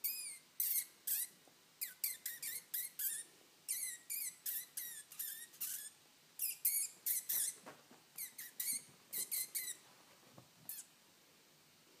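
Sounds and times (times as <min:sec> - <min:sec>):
short squeaky whistles: 0:00.0 - 0:07.6, 0:08.2 - 0:09.8.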